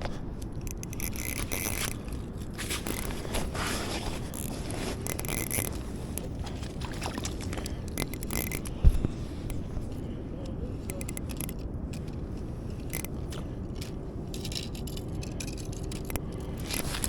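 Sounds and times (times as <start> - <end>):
steady low rumble: 0.0 - 17.0
fishing reel running: 0.6 - 3.2, 4.3 - 6.4, 7.8 - 8.7, 10.8 - 11.6, 12.8 - 13.2, 14.3 - 16.9.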